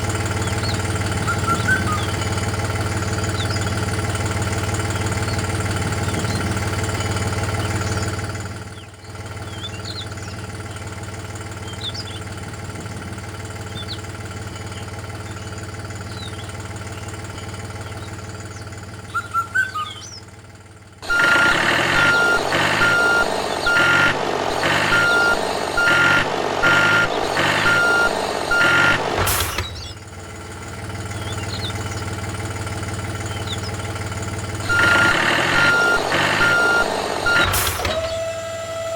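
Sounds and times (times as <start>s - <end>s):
loud engine: 0.0s - 38.9s
reversing alarm beeping: 21.0s - 30.0s, 34.6s - 38.9s
motor humming: 21.0s - 38.9s.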